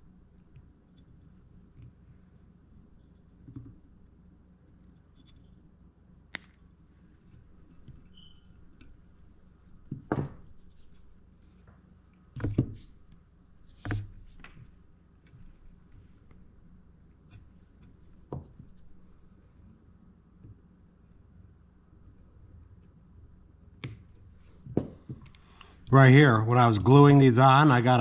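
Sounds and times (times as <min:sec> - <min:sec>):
knocks: 0:09.9 - 0:10.4.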